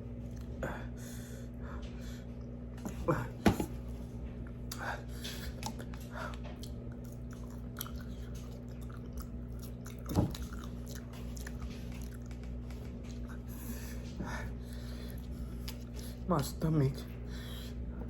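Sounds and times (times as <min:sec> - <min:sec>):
person chewing crunchy food: 0:04.5 - 0:16.3.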